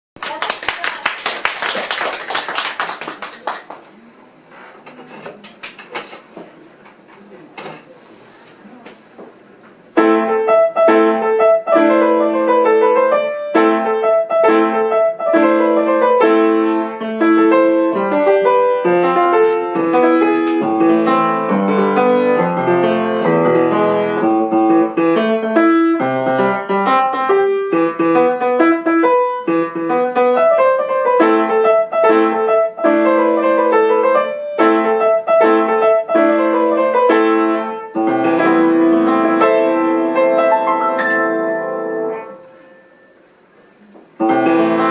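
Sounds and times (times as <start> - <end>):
fast piano piece: 10.0 - 43.2, 44.2 - 44.9.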